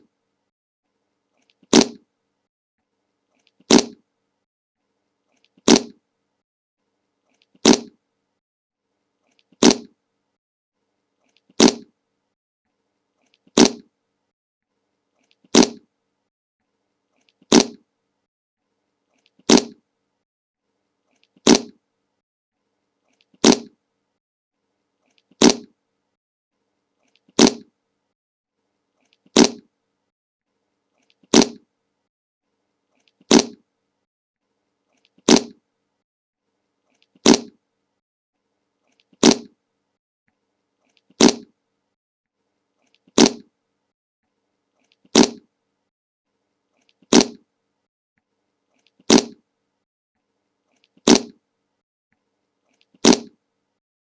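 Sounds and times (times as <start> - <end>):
fart sound effect: 1.6 - 2.0, 3.7 - 4.0, 5.6 - 6.0, 7.6 - 8.0, 9.6 - 10.0, 11.6 - 11.9, 13.5 - 13.9, 15.5 - 15.8, 17.5 - 17.8, 19.5 - 19.8, 21.4 - 21.8, 23.4 - 23.8, 25.4 - 25.7, 27.4 - 27.7, 29.3 - 29.7, 31.3 - 31.6, 33.3 - 33.6, 35.3 - 35.6, 37.2 - 37.6, 39.2 - 39.5, 41.2 - 41.5, 43.2 - 43.5, 45.1 - 45.4, 47.1 - 47.4, 49.1 - 49.4, 51.0 - 51.4, 53.0 - 53.4.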